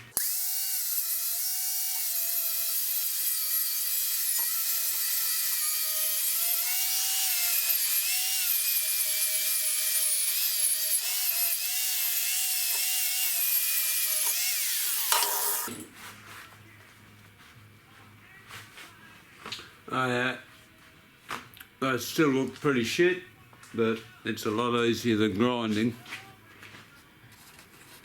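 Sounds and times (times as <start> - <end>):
power tool motor whine: 0.0 - 15.8
wire bristles hissing on steel: 14.2 - 15.8.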